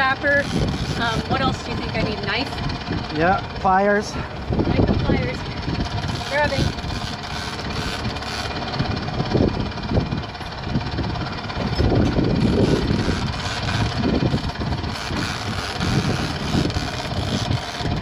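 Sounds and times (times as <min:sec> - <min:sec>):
boat engine running: 0:00.0 - 0:18.0
wind buffeting microphone: 0:00.0 - 0:18.0.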